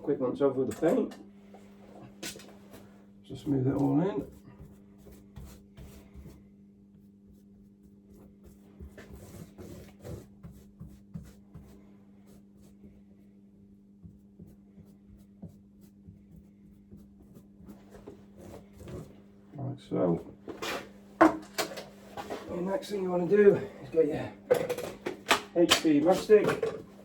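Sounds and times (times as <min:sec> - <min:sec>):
steady low hum: 0:00.0 - 0:27.0
paintbrush scratchy brushing strokes: 0:07.0 - 0:13.0.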